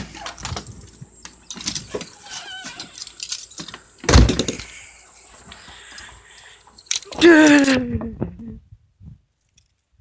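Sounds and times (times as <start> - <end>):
keys jangling: 0.4 - 4.7, 5.5 - 7.8.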